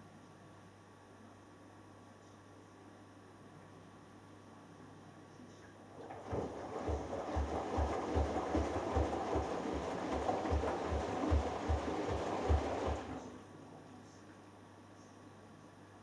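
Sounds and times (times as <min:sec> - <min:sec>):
washing machine drum turning: 0:06.0 - 0:13.3
low thumps of wet load: 0:06.2 - 0:13.2.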